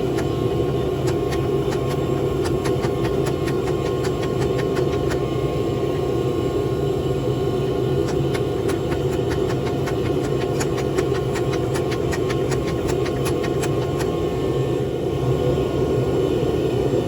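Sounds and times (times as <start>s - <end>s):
forging equipment droning: 0.0s - 5.3s, 7.7s - 14.2s.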